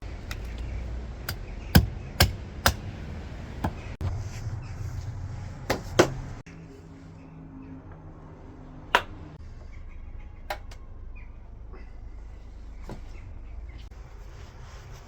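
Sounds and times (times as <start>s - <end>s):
low rumble: 0.0s - 6.8s.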